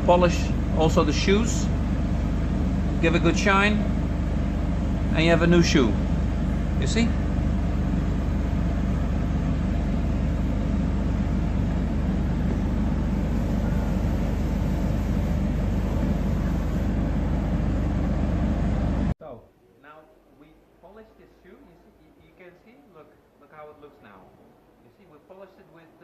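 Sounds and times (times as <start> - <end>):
shoe polishing machine running: 0.0 - 19.1.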